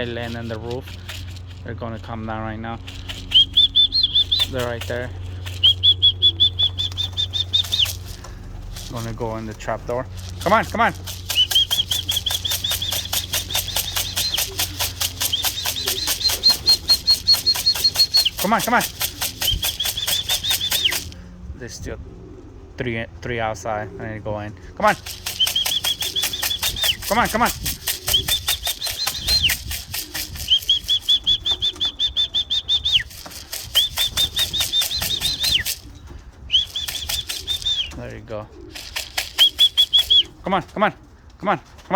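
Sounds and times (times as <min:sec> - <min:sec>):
pigeon wings flapping: 0:00.0 - 0:21.2, 0:24.9 - 0:41.9
rapid clicking with squeaks: 0:00.0 - 0:21.2, 0:24.9 - 0:40.8.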